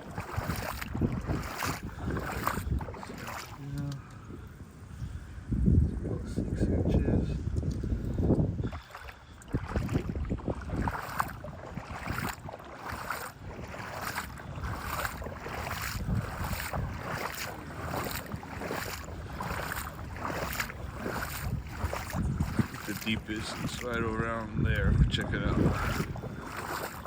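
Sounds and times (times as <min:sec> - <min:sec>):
footsteps wading through water: 0:00.0 - 0:04.6, 0:07.4 - 0:27.0.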